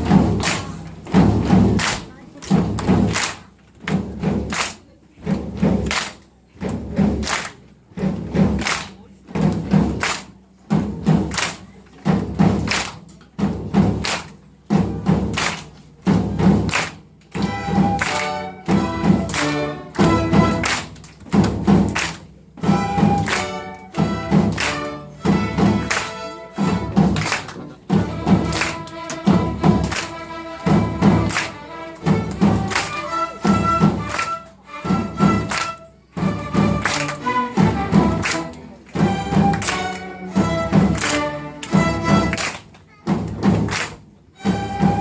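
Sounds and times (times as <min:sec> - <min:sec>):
orchestra percussion thumps: 0:00.0 - 0:45.0
pitched instrument notes: 0:17.4 - 0:20.9, 0:22.6 - 0:27.3, 0:28.0 - 0:42.5, 0:44.4 - 0:45.0.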